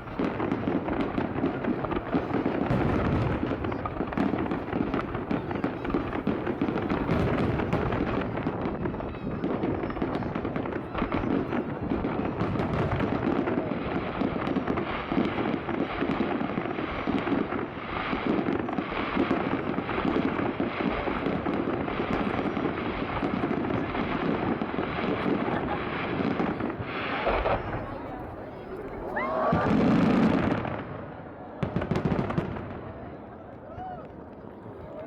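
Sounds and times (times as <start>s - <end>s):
fireworks bursting and crackling: 0.0s - 35.0s.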